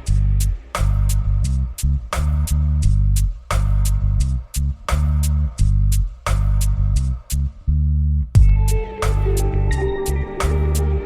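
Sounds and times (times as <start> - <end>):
electronic music with heavy bass: 8.4 - 11.0.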